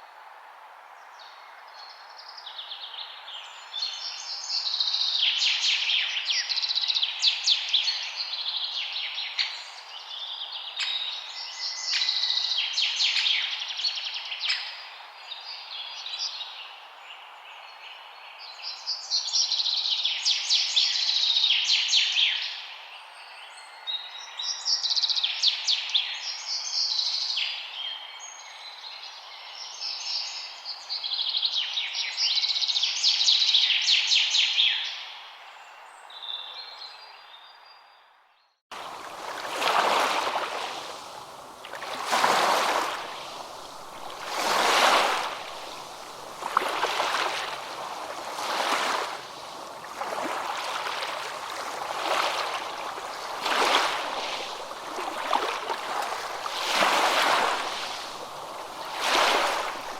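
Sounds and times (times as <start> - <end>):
songbirds chirping and trilling: 38.8 - 59.9
steady background hiss: 38.8 - 59.9.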